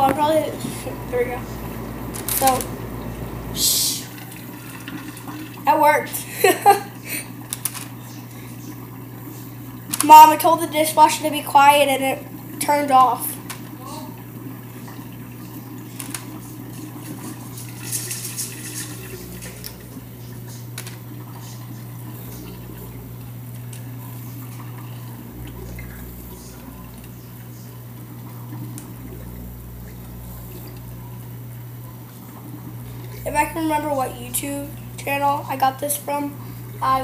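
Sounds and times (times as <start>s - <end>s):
steady low hum: 0.0s - 4.5s, 18.6s - 37.0s
water sounds: 0.0s - 37.0s.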